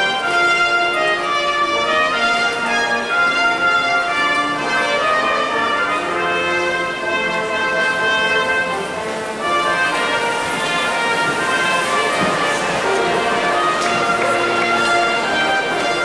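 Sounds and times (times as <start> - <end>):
brass ensemble playing: 0.0 - 16.0.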